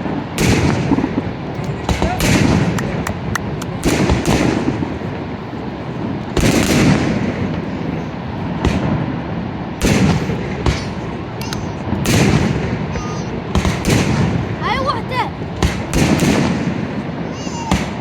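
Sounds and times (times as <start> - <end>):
fireworks booming: 0.0 - 18.0
constant rushing background: 9.8 - 18.0.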